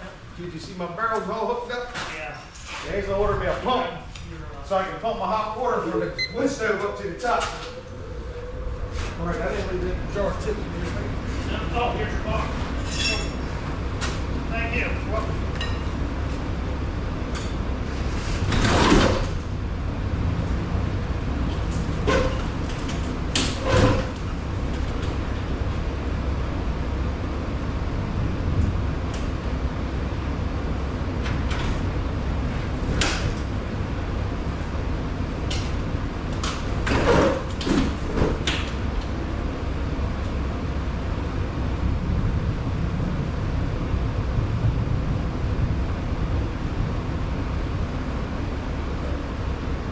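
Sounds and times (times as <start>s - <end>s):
garage door metal clanks and rattles: 1.3s - 3.9s, 17.3s - 19.6s, 21.4s - 25.6s, 32.6s - 33.8s, 35.3s - 39.0s
low rumble: 2.9s - 36.9s, 38.9s - 49.9s.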